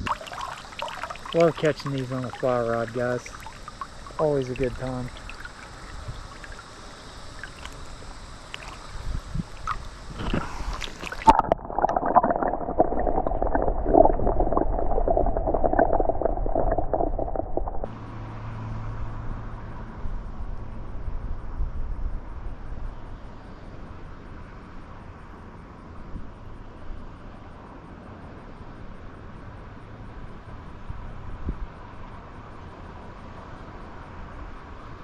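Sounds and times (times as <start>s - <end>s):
flowing water: 0.0s - 17.9s
wind on microphone: 8.6s - 17.9s.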